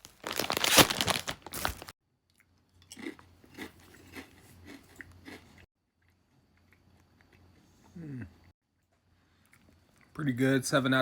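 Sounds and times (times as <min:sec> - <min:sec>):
potato chips crunching: 0:00.0 - 0:01.9, 0:02.8 - 0:05.5.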